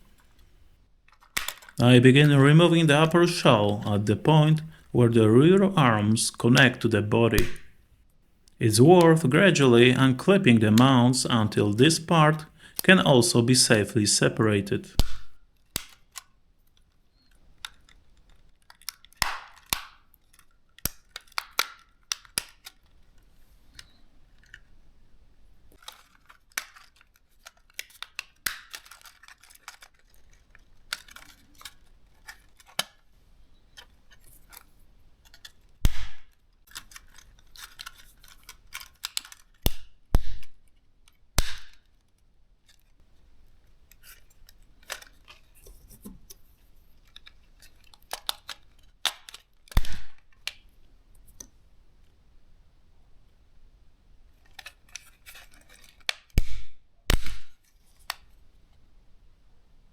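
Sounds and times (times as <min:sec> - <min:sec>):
plastic clips snapping: 0:01.1 - 0:01.8, 0:47.9 - 0:50.6.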